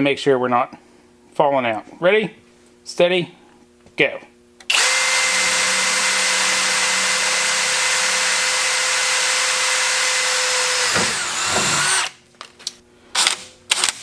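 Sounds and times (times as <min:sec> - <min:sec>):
drill boring through steel pipe: 0:04.7 - 0:12.1
sharp knocks: 0:10.8 - 0:12.0.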